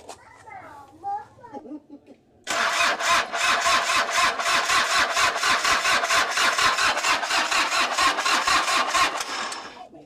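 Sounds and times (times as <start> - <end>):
diesel engine cranking: 2.5 - 9.8.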